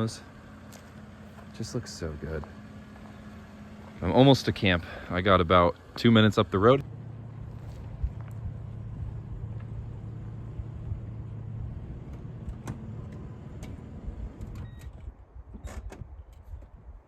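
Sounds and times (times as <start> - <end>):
pickup truck engine rumble: 0.0 - 16.8.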